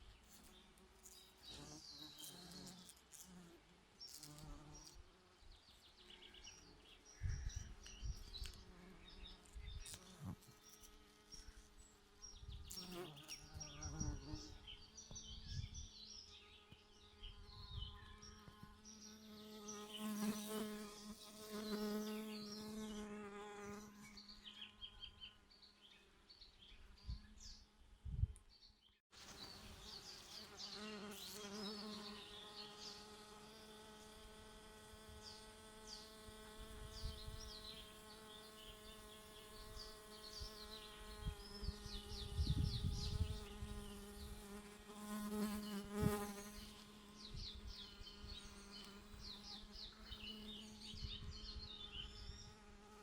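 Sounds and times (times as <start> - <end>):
honeybees buzzing: 12.6 - 15.3, 16.0 - 24.8, 29.2 - 53.0.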